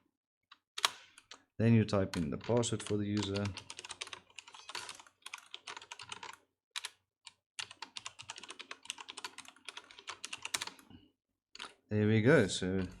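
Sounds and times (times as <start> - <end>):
computer keyboard typing: 2.1 - 10.9, 11.6 - 11.8, 12.8 - 13.0.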